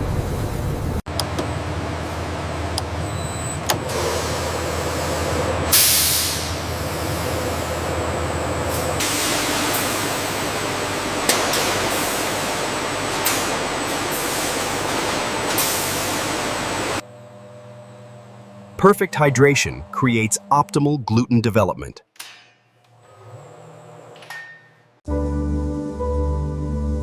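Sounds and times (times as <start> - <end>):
factory machinery hum: 0.0 - 25.0
burst of air hiss: 5.8 - 6.6.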